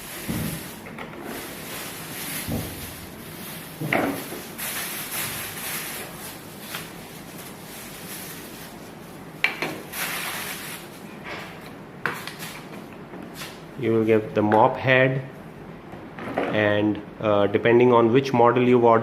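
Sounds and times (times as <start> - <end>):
packaging rustling: 0.0 - 9.2, 9.8 - 11.1.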